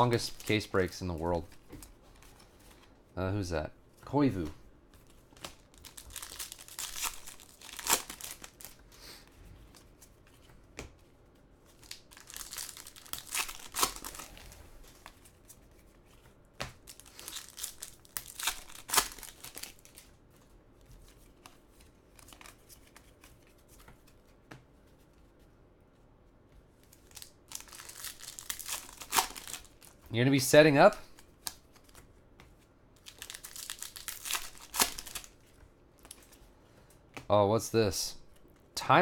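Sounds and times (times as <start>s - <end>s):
card pack wrappers crinkling: 0.0s - 1.8s, 4.0s - 8.8s, 11.7s - 16.2s, 16.8s - 20.1s, 26.9s - 32.0s, 33.0s - 36.3s.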